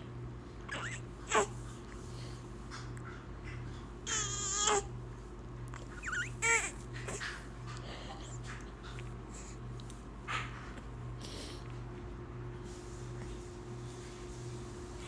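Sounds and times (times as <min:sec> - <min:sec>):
steady low hum: 0:00.0 - 0:15.0
baby cooing and squealing: 0:00.7 - 0:01.5, 0:06.0 - 0:07.2.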